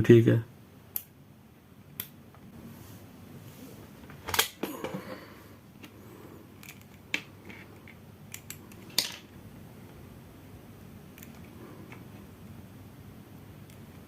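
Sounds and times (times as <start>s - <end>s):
sharp clicks and handling noise: 4.1s - 5.0s, 6.6s - 9.4s, 11.1s - 12.3s.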